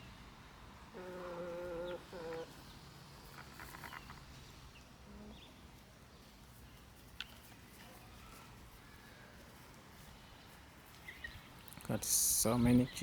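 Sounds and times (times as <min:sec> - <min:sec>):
hens calling: 0:00.9 - 0:02.7.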